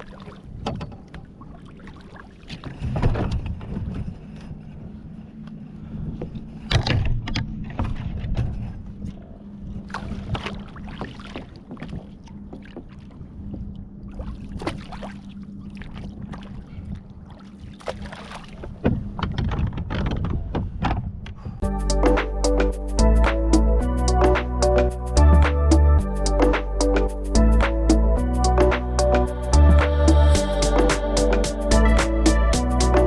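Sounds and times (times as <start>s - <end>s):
water splashing against kayak hull: 0.0s - 4.0s, 9.8s - 20.8s
steady low hum: 21.6s - 33.0s.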